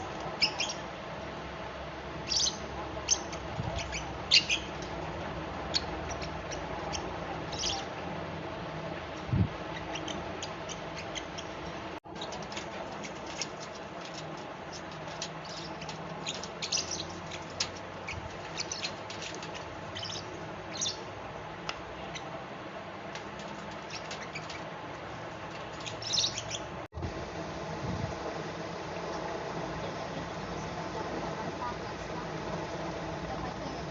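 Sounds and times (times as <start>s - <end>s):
steady background hum: 0.0s - 33.9s
bird chirping: 0.3s - 0.9s, 2.2s - 4.9s, 5.7s - 8.0s, 9.6s - 21.1s, 23.5s - 24.7s, 25.7s - 26.8s.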